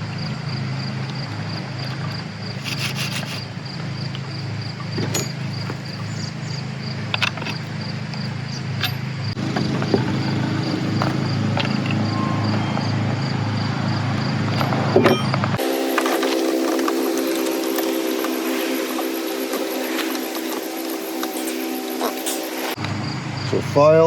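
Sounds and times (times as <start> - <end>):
low machine hum: 0.0 - 23.9
metallic clicks and scrapes: 2.6 - 3.5
faint pulsing high chirp: 10.2 - 14.4.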